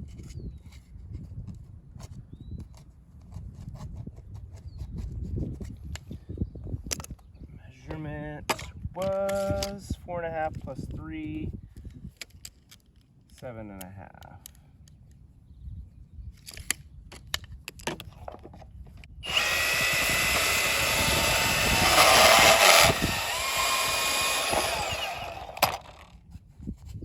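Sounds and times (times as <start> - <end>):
band saw cutting plastic pipe: 19.2 - 26.1.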